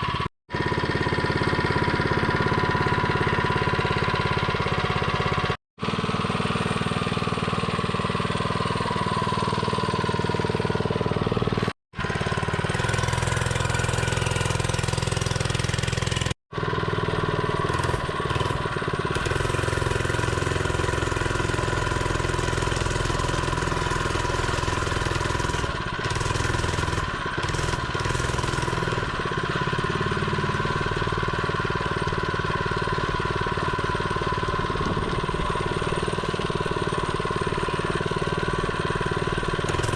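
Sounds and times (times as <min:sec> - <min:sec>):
small engine running: 0:00.0 - 0:39.9.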